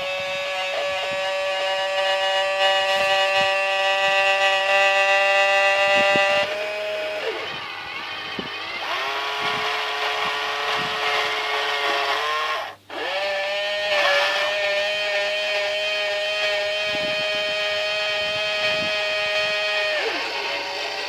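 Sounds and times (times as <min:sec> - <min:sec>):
toy excavator motors whining: 0:00.0 - 0:21.0.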